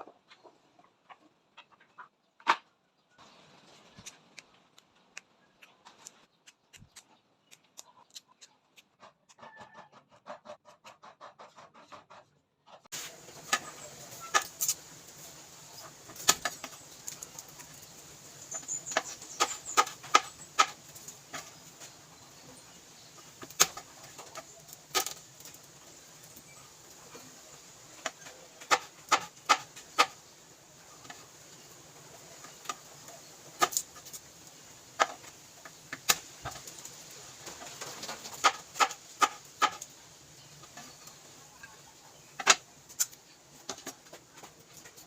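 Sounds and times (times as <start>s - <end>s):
steady background hiss: 12.9s - 45.0s.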